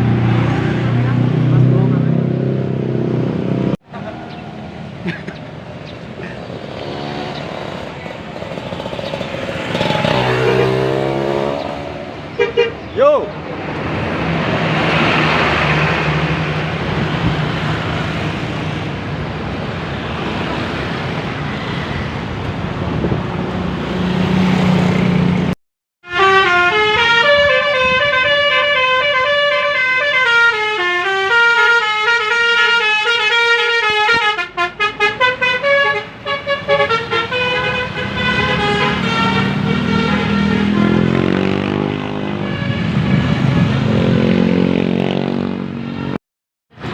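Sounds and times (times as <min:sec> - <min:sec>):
bus engine and road noise: 0:00.0 - 0:46.9
bus air horn melody: 0:26.0 - 0:41.3, 0:42.2 - 0:43.4.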